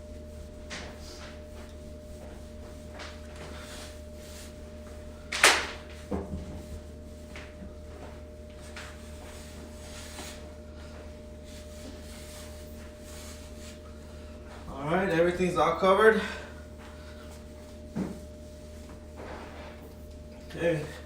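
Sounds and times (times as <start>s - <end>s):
cloth wiping steel door: 0.3s - 5.0s, 5.8s - 15.4s.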